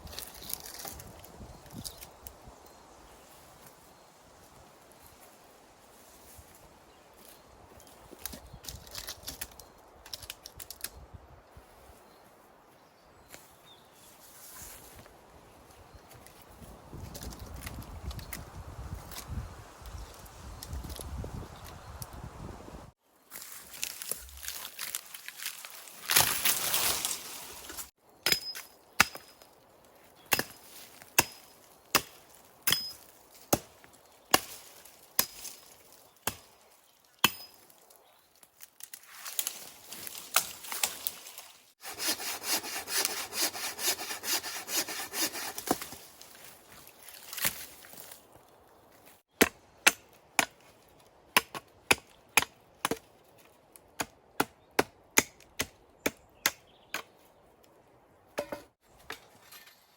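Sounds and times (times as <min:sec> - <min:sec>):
hand saw sawing wood: 0:41.8 - 0:45.9.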